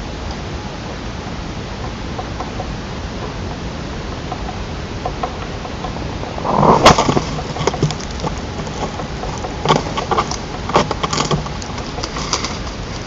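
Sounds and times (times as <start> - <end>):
steady hiss: 0.0 - 13.0
sticks knocking and rustling: 6.4 - 13.0.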